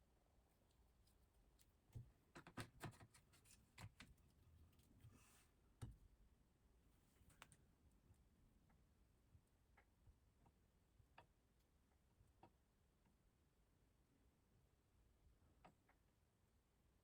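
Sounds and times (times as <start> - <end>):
faint clicks and taps: 0.7 - 5.0.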